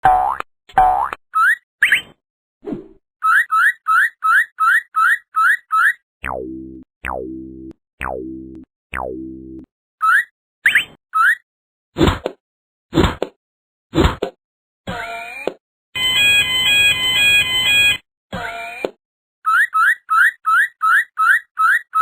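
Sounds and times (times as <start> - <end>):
rising boing-like chirps: 6.2 - 9.7.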